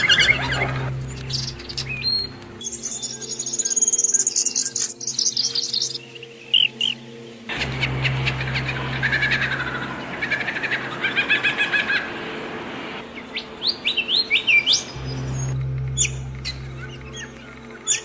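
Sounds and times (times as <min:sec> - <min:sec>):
steady low hum: 0:00.0 - 0:03.0, 0:07.5 - 0:11.0, 0:14.8 - 0:18.0
songbirds chirping and singing: 0:00.0 - 0:12.2, 0:13.0 - 0:18.0.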